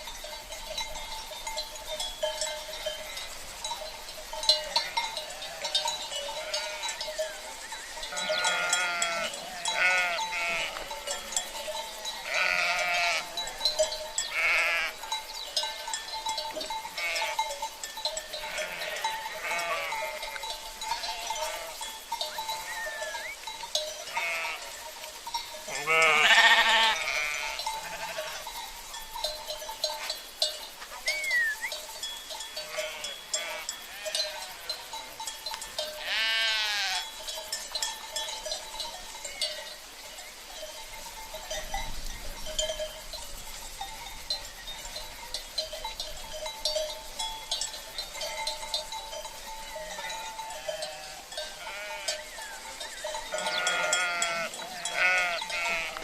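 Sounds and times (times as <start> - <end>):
cowbells clinking: 0.0 - 56.0
sheep bleating: 4.8 - 7.0, 8.1 - 11.4, 12.2 - 13.5, 14.3 - 15.0, 17.0 - 17.4, 18.4 - 21.8, 24.1 - 24.7, 25.7 - 28.5, 32.6 - 34.8, 36.0 - 37.1, 50.0 - 52.3, 53.3 - 56.0.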